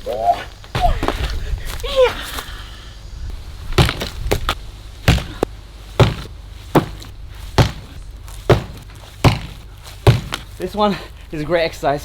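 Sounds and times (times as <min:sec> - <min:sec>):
sledgehammer striking bricks: 0:03.8 - 0:10.6.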